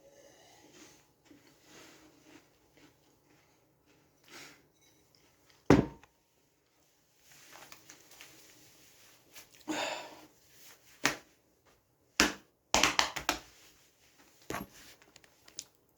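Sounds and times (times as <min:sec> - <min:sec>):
crackers crunching: 0:14.5 - 0:15.9.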